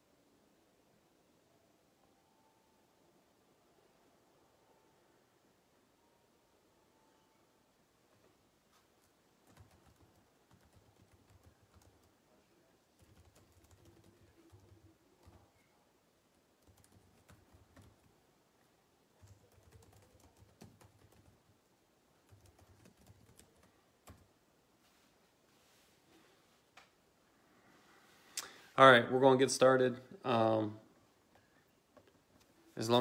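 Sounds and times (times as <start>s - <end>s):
faint typing on a keyboard: 8.1s - 15.8s, 16.5s - 18.2s, 19.1s - 24.4s.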